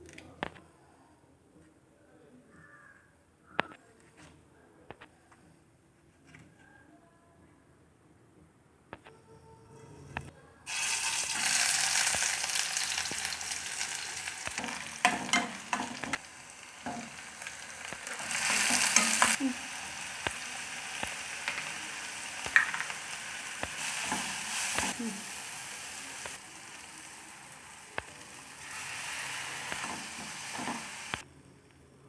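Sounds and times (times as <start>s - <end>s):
food sizzling in a hot pan: 10.7s - 31.2s.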